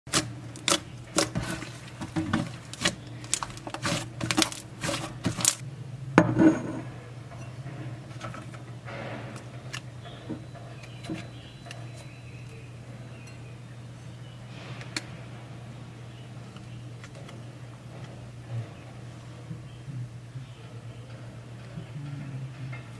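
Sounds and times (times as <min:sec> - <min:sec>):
clicks of small hard objects: 0:00.1 - 0:05.6
steady low hum: 0:00.1 - 0:22.9.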